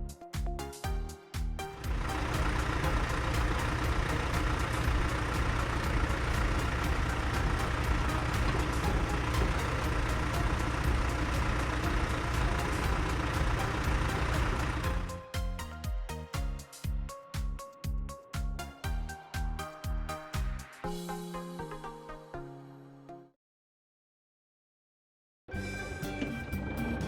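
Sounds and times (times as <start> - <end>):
road roller engine pulsing: 1.8 - 15.3.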